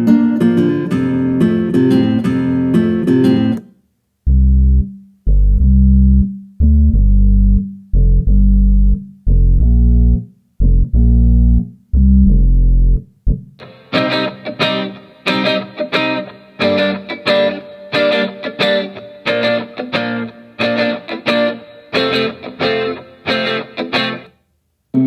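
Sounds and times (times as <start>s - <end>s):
plucked guitar over a beat: 0.0s - 3.7s, 4.3s - 24.3s
deep bass notes: 4.2s - 13.6s.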